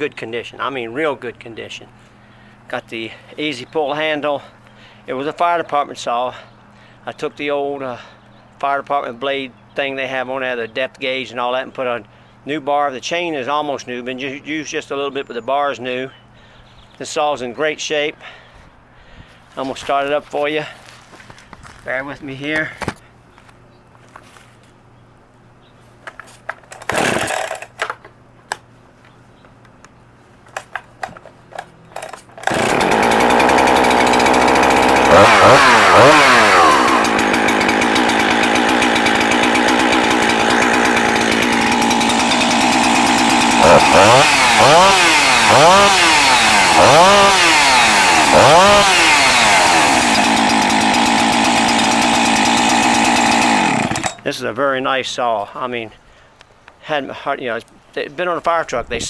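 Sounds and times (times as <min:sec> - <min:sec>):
chainsaw running and revving: 0:26.9 - 0:27.6, 0:32.4 - 0:54.2.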